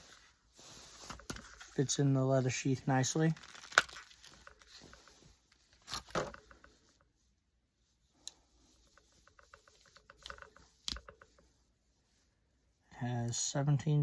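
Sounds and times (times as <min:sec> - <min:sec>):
multitool and sheath handling: 0:00.0 - 0:01.8, 0:02.9 - 0:07.1, 0:08.2 - 0:11.5.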